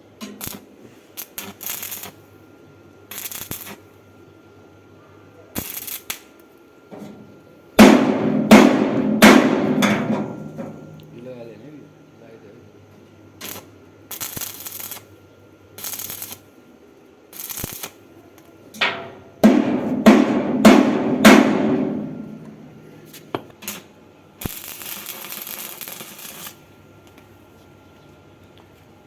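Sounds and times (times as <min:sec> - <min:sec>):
welding arc crackle: 0:00.2 - 0:02.3, 0:03.1 - 0:04.0, 0:05.6 - 0:06.4, 0:13.4 - 0:15.2, 0:15.8 - 0:16.5, 0:17.3 - 0:18.6, 0:23.0 - 0:26.7
loud ringing metal knocks: 0:07.8 - 0:11.0, 0:18.8 - 0:22.8.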